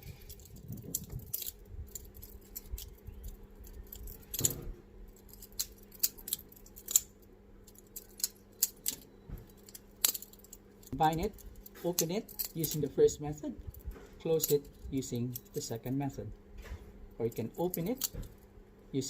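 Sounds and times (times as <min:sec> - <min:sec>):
fan knife clicking and clattering: 0:00.3 - 0:07.1.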